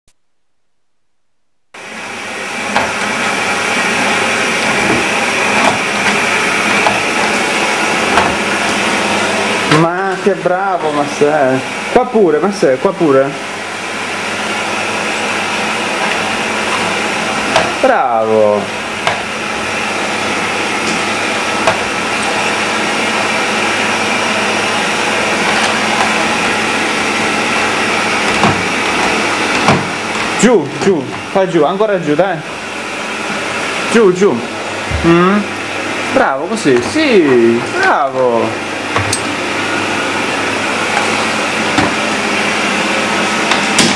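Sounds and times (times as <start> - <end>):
vacuum cleaner running: 1.8 - 43.9.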